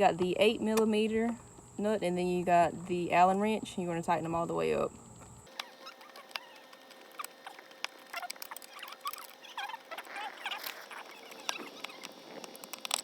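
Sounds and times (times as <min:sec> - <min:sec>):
wrench clicks and squeaks: 0:05.5 - 0:13.0.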